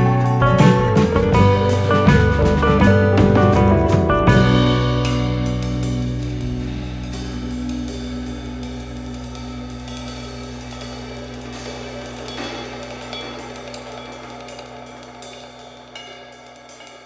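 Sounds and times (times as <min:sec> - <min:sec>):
held chord music: 0:00.0 - 0:13.1
drums and cymbals: 0:00.0 - 0:17.0.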